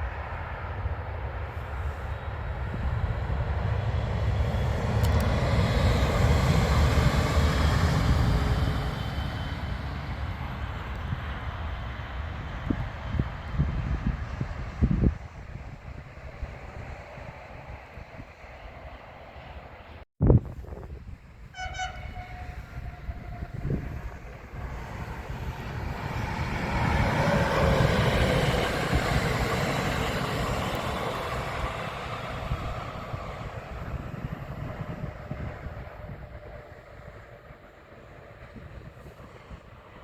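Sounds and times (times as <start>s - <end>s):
train passing rumble: 0.0s - 40.0s
train horn: 21.4s - 25.4s.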